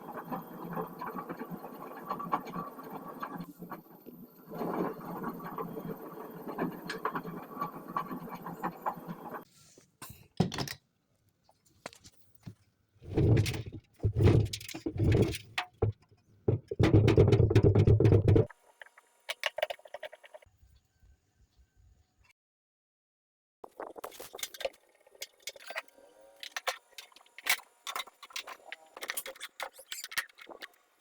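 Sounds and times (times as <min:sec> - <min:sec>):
washing machine drum rattling: 0:13.1 - 0:18.5.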